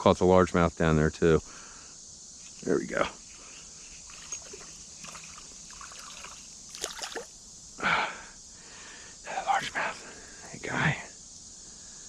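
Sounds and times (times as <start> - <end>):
faint creek water: 2.4 - 8.1
fish splashing at surface: 4.1 - 7.3.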